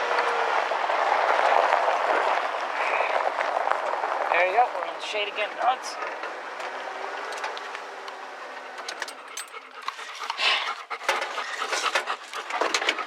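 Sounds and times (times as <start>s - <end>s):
dogs panting: 8.3s - 13.0s.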